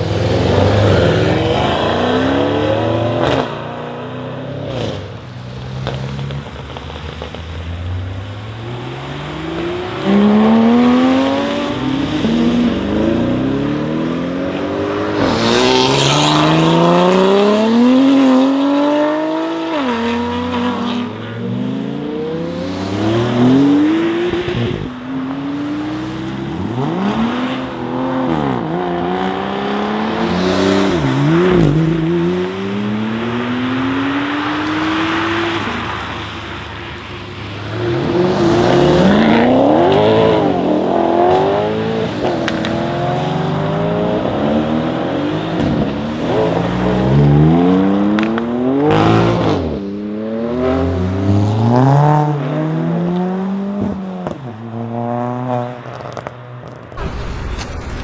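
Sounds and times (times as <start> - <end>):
exhaust crackles: 57.0 - 58.0.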